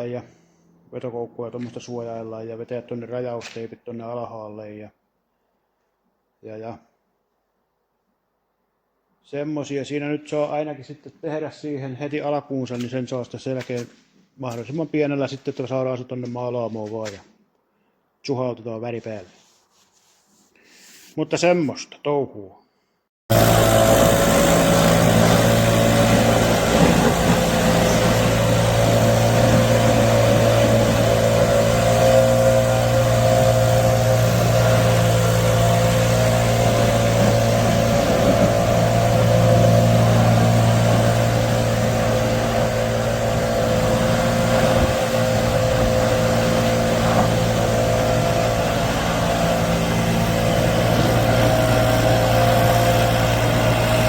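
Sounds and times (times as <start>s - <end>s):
motor running steadily: 23.3s - 54.0s.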